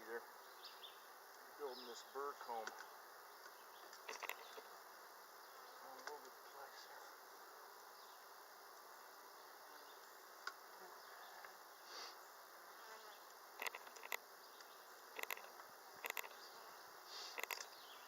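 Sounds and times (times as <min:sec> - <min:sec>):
sharp clicks: 0:02.6 - 0:04.6, 0:13.6 - 0:16.4, 0:17.3 - 0:17.8.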